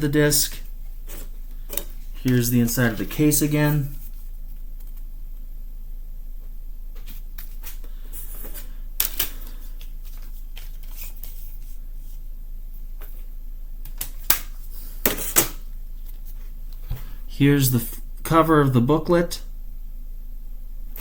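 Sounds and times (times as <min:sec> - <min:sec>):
steady low hum: 0:00.0 - 0:21.0
paper booklet rustling: 0:07.0 - 0:12.2.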